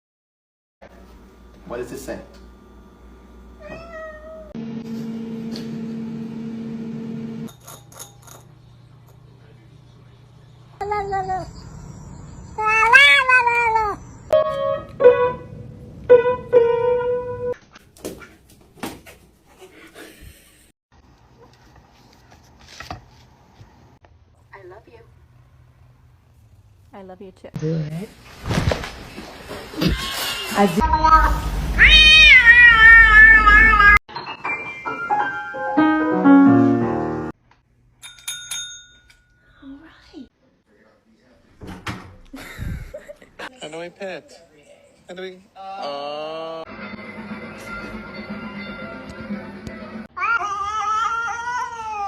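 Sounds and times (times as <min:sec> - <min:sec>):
cat meowing: 0:03.6 - 0:04.6, 0:31.8 - 0:34.0, 0:50.2 - 0:52.0
electronic keyboard notes: 0:14.4 - 0:17.5, 0:34.4 - 0:37.3
descending piano notes: 0:34.1 - 0:37.3.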